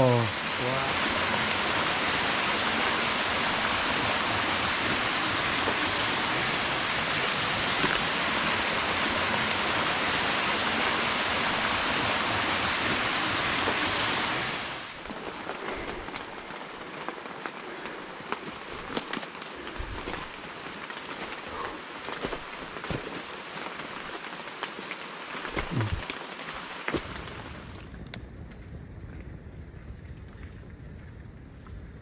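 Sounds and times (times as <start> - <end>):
waterfall rushing: 0.0 - 15.0.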